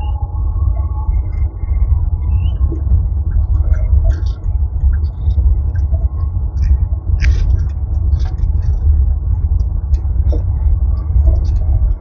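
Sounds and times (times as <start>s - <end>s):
vehicle interior rumble: 0.0s - 12.0s
light clicks and rattles: 2.7s - 12.0s.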